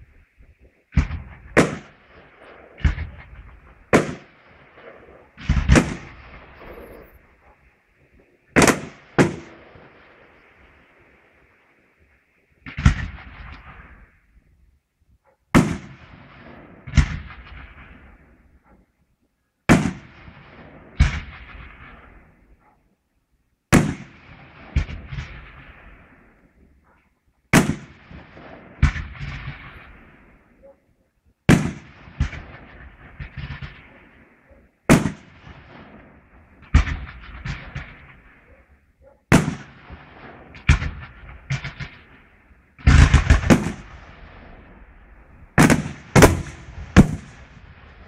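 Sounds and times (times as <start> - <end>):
fireworks exploding with crackle: 0.0 - 14.6, 15.5 - 18.9, 19.7 - 22.8, 23.7 - 30.7, 31.3 - 48.0.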